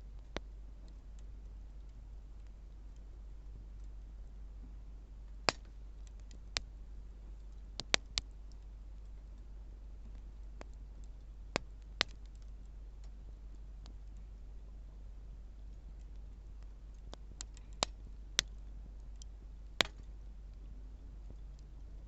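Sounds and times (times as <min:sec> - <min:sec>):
low fire rumble: 0:00.0 - 0:22.0
burning wood popping and snapping: 0:05.1 - 0:22.0.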